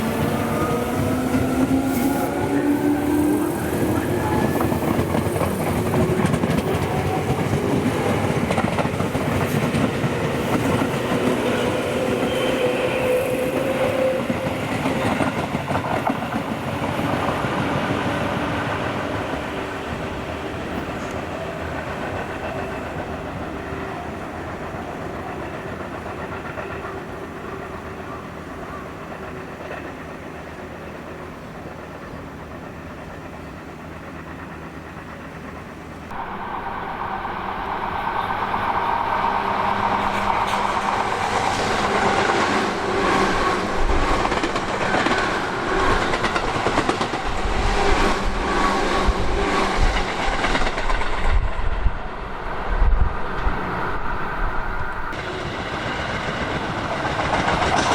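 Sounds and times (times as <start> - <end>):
electric train running on track: 0.0 - 57.9
train wheels clattering over rail joints: 39.7 - 48.6, 55.2 - 57.9.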